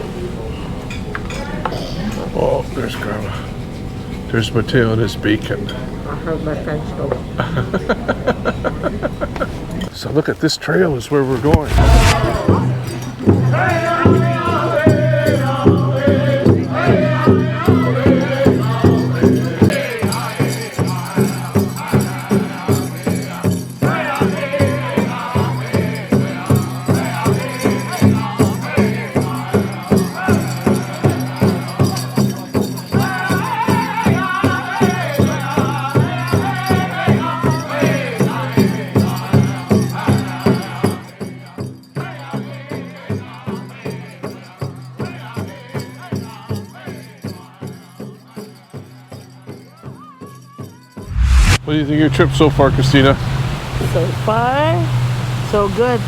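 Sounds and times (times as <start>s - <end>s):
shaker rattle: 11.6s - 13.0s
low bass line: 11.7s - 12.7s.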